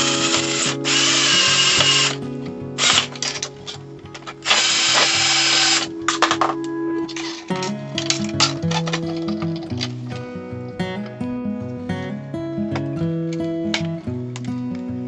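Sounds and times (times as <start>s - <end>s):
power drill whirring: 0.0s - 6.6s
background music: 0.0s - 15.0s.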